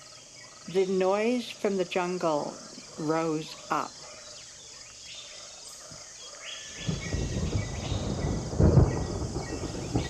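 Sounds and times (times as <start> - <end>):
insects chirring: 0.0 - 10.0
short bird calls: 4.1 - 10.0.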